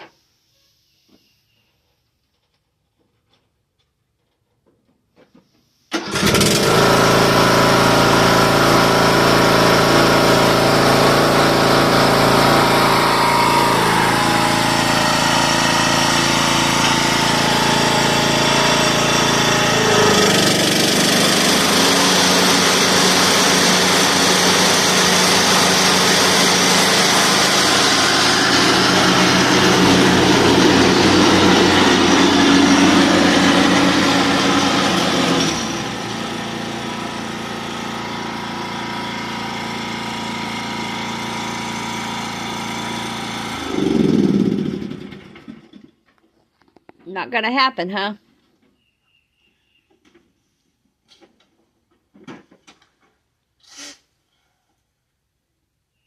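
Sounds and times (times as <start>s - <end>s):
lawn mower engine running: 5.9s - 45.9s.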